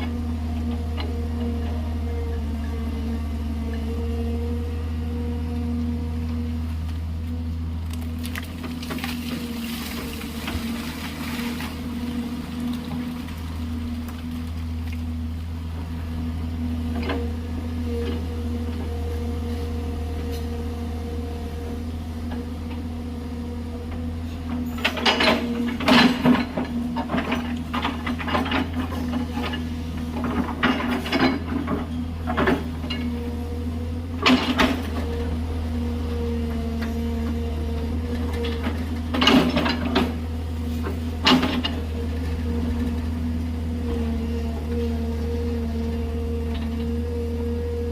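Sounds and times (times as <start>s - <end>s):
diesel engine under load: 0.0s - 47.9s
bucket clanking and scraping gravel: 8.2s - 13.5s.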